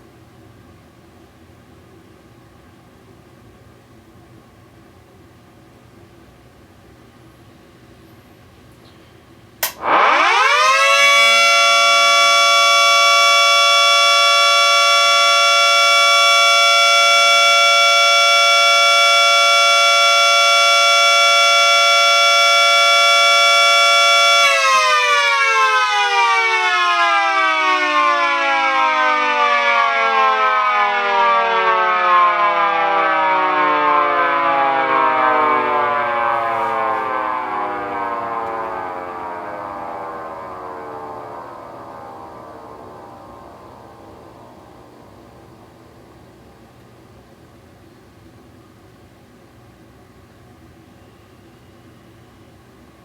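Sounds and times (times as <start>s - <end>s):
switch click: 9.6s - 9.8s
dual-tone siren: 9.6s - 47.0s.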